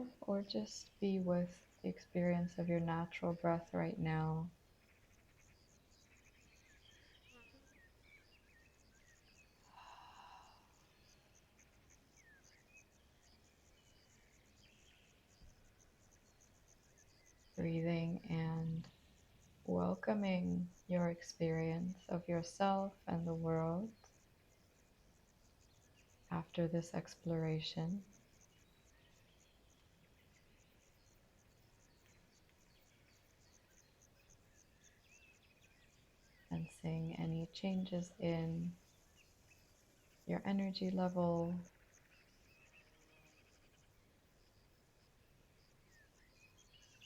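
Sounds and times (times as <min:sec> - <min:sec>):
soft hiss: 0:00.0 - 0:47.0
high insect chirping: 0:04.5 - 0:19.7, 0:27.0 - 0:47.0.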